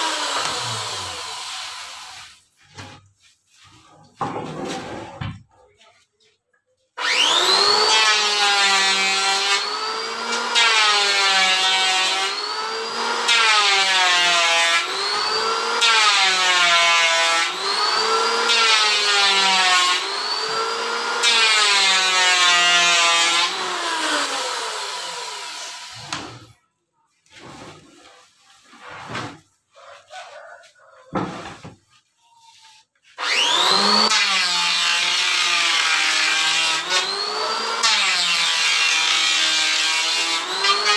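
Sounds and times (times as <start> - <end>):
electric wood planer cutting: 0.0 - 2.3, 7.0 - 26.5, 33.2 - 40.9.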